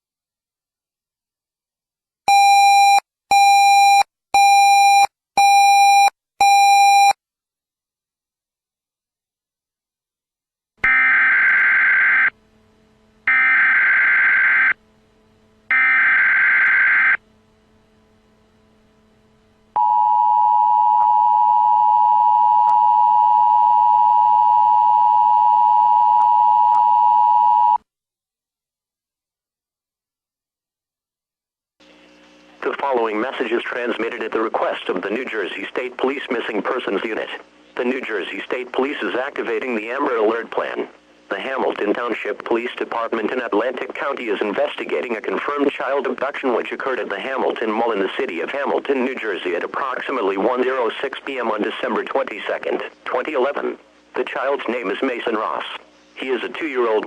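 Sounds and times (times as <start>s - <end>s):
buzzy digital header warble: 10.8s - 12.4s, 13.2s - 14.8s, 15.7s - 17.3s.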